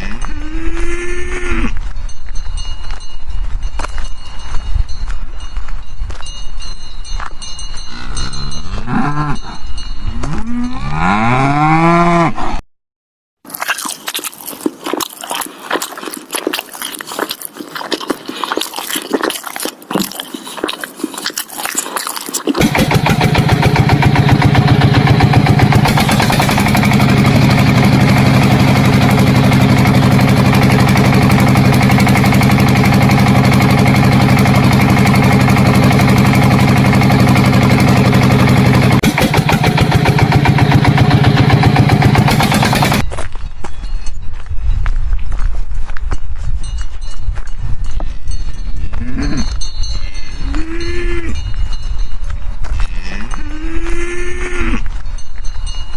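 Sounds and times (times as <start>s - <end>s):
cow mooing: 0.0s - 1.8s, 7.9s - 12.6s, 49.0s - 51.4s, 52.8s - 54.9s
steady engine-like drone: 22.6s - 43.0s.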